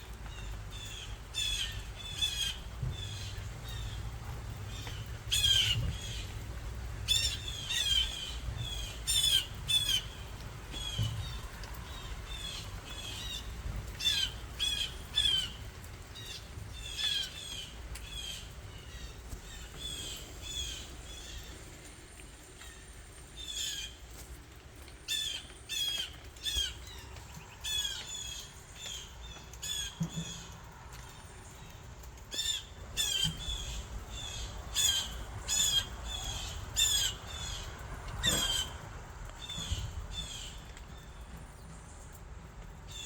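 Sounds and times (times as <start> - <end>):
birds squawking: 4.8 - 15.7, 32.3 - 38.8.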